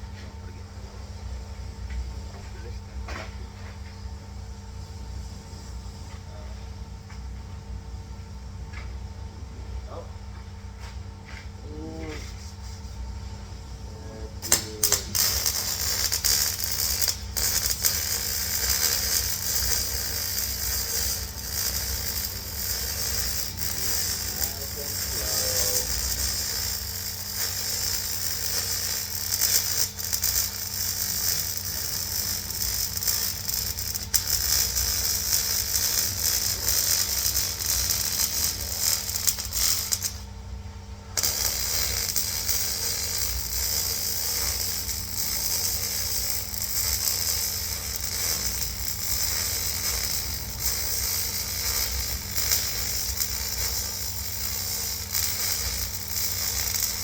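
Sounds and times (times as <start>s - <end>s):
welding arc crackling hiss: 11.7s - 40.4s, 41.1s - 57.0s.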